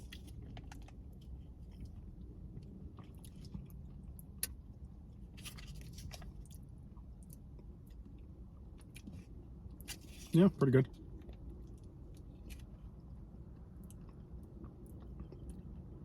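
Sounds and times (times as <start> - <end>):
chewing seeds: 8.8 - 16.0.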